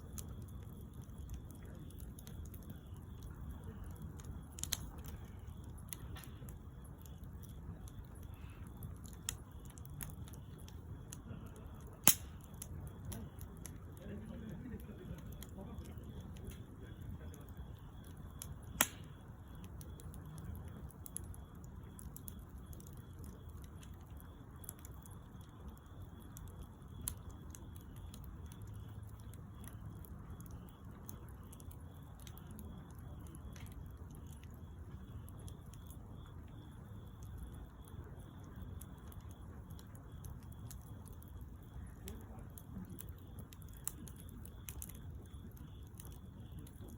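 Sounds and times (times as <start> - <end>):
bonfire crackling: 0.0 - 46.9
low steady fire rumble: 0.0 - 46.9
sharp pop of fire: 11.2 - 13.4, 18.7 - 19.2.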